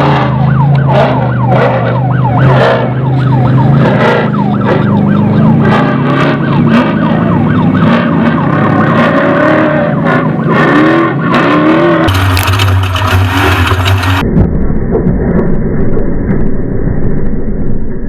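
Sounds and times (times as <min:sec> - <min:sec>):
race truck engine revving: 0:00.0 - 0:14.2
steady low drone: 0:00.0 - 0:18.0.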